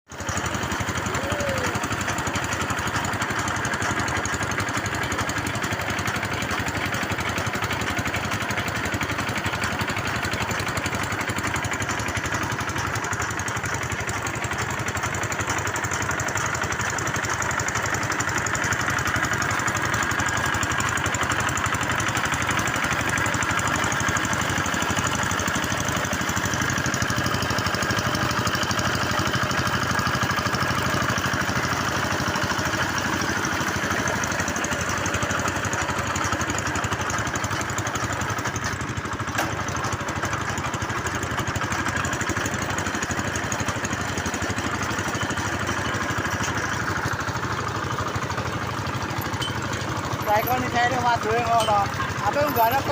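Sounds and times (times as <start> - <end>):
drilling machine engine running: 0.2 - 52.9.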